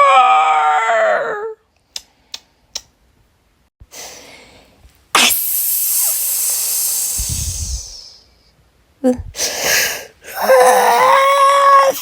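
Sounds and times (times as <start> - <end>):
person exhaling breathily: 5.3 - 8.3.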